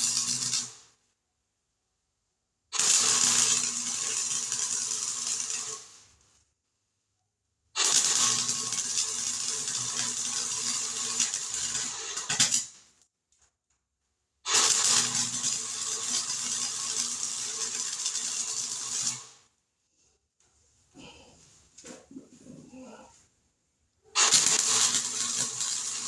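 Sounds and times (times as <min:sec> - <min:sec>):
welding arc crackling and humming: 0:00.0 - 0:00.8, 0:02.8 - 0:06.1, 0:07.8 - 0:12.8, 0:14.5 - 0:19.4, 0:24.2 - 0:26.0.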